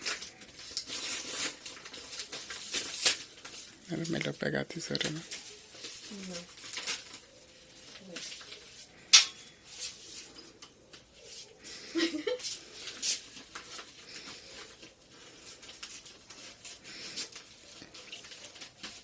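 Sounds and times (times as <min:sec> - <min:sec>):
plastic packaging tearing: 0:00.0 - 0:03.8, 0:05.0 - 0:08.7.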